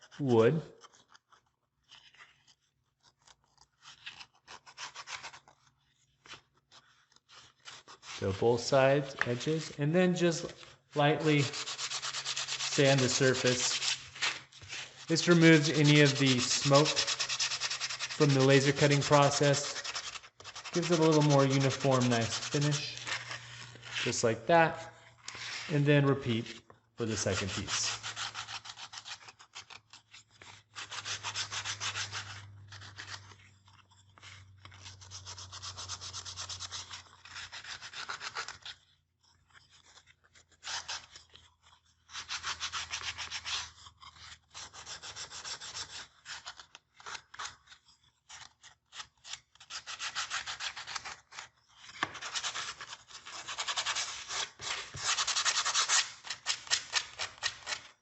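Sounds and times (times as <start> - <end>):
sandpaper sanding wood: 7.4 - 24.8, 25.4 - 29.8, 30.4 - 33.3, 34.9 - 38.6, 42.1 - 46.6, 49.6 - 57.9.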